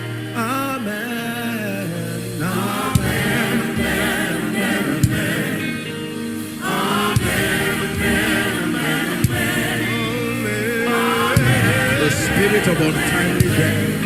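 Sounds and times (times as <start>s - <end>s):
gospel choir singing: 0.0s - 14.0s
sharp beat: 11.1s - 13.8s.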